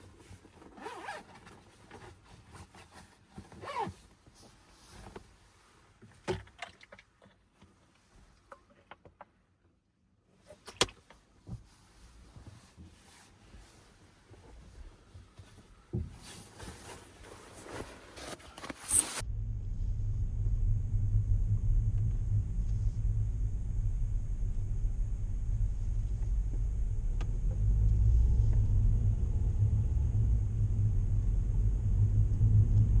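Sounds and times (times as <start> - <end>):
car rumble from inside cabin: 19.2 - 33.0.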